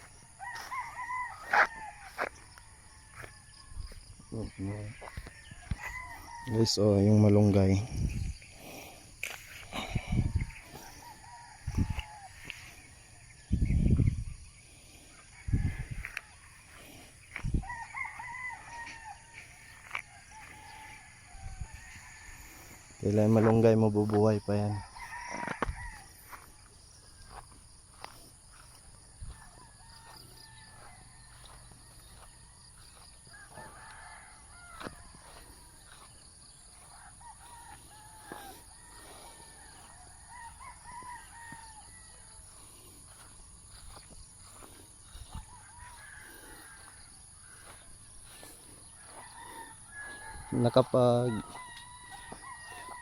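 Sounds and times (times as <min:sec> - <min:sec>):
chickens calling faintly: 0:00.0 - 0:13.2.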